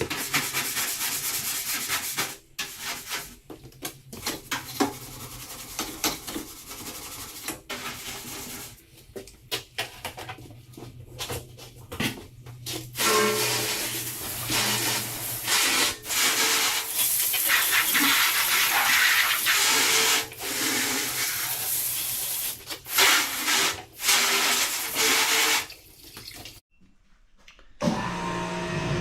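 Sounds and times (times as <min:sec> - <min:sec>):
water spraying hard: 0:16.9 - 0:20.3.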